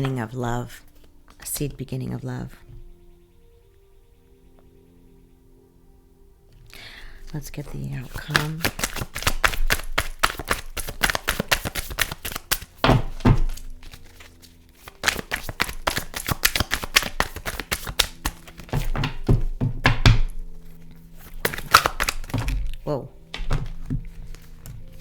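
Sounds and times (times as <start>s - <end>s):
cards being shuffled: 7.6s - 25.0s
dull thumps of card deck: 8.1s - 14.0s, 14.9s - 20.4s, 21.2s - 25.0s.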